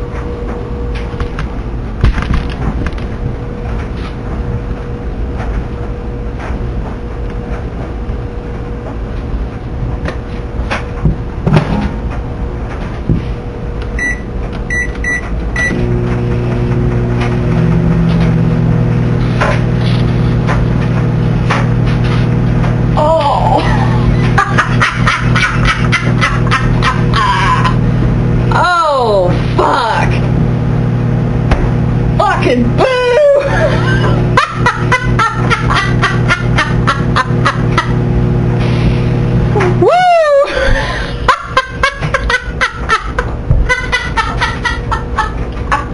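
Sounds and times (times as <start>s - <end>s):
microwave oven humming: 0.0s - 45.9s
short high keypad beeps: 14.0s - 15.7s
person laughing: 23.0s - 27.9s, 32.8s - 38.0s, 39.6s - 45.9s.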